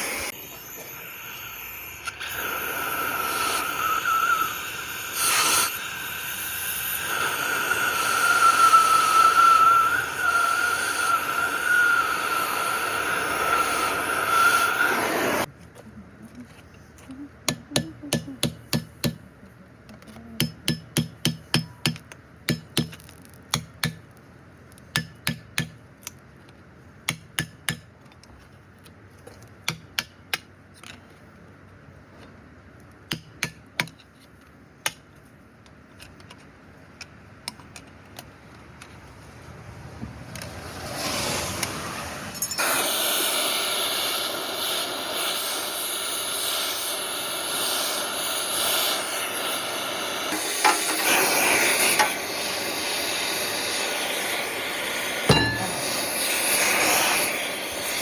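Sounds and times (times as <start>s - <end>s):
hammer blows on metal: 55.3s - 56.4s.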